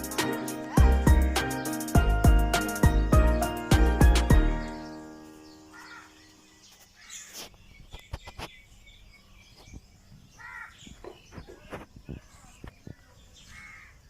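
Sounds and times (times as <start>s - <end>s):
music: 0.0s - 5.8s.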